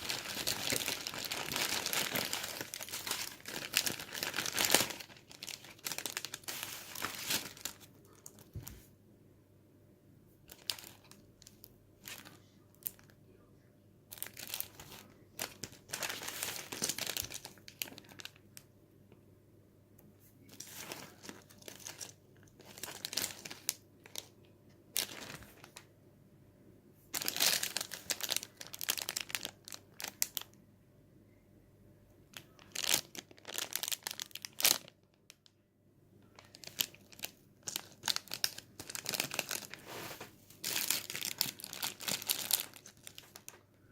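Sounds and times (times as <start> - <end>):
plastic packaging crinkling: 0.0 - 8.9, 10.5 - 13.1, 14.1 - 18.6, 20.4 - 24.3, 25.0 - 25.8, 27.2 - 30.5, 32.4 - 35.4, 36.3 - 43.7.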